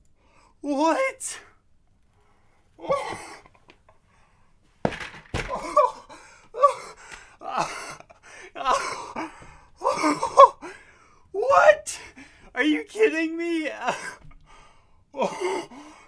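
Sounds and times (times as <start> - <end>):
man gasping: 6.0 - 9.9, 10.6 - 11.3, 12.0 - 12.6, 14.0 - 16.0.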